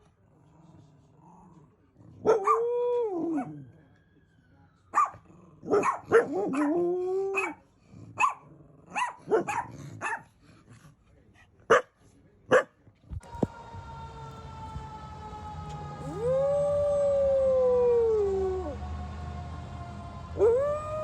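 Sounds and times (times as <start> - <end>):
dog barking and yipping: 5.0 - 7.6, 8.2 - 10.3
faint tone sliding down: 13.2 - 21.0
dog howling: 13.3 - 21.0.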